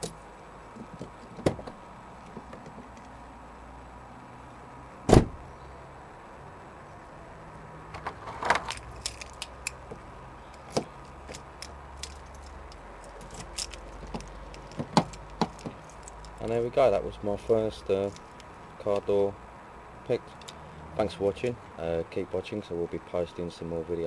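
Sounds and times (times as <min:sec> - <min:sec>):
loud sharp knock: 0:05.1 - 0:05.4.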